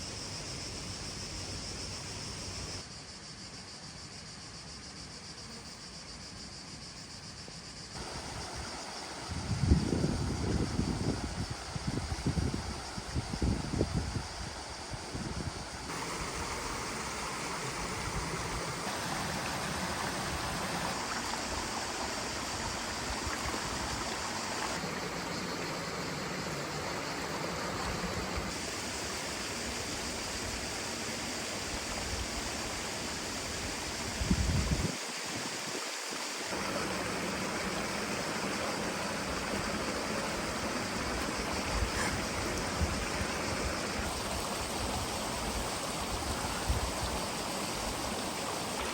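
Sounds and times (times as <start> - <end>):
river rushing over rocks: 36.5 - 41.6.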